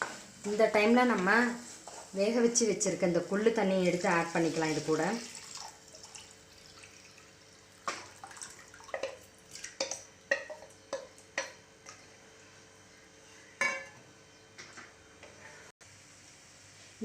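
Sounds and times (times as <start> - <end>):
liquid pouring and splashing: 4.1 - 11.2.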